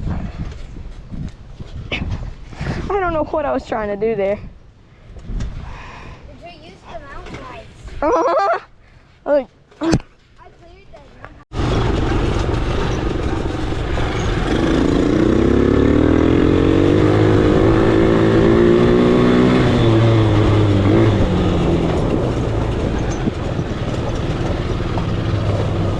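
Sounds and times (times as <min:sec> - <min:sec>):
atv engine revving: 0:12.5 - 0:25.9.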